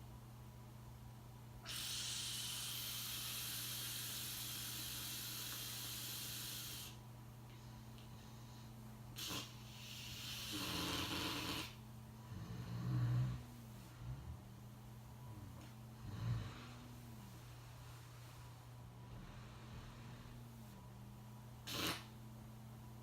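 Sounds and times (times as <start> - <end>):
steady low hum: 0.0 - 23.0
person snoring: 9.2 - 14.4, 15.3 - 17.1, 21.6 - 22.1.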